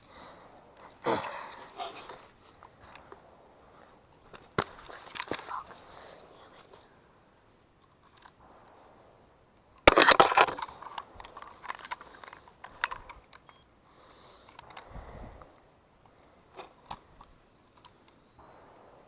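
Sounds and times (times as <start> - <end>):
sharp clicks: 9.6 - 13.7, 14.4 - 15.5.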